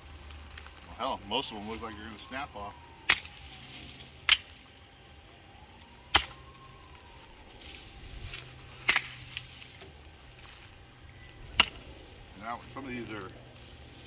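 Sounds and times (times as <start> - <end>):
knife chopping tree branches: 2.7 - 4.8, 5.8 - 10.5, 11.3 - 14.0.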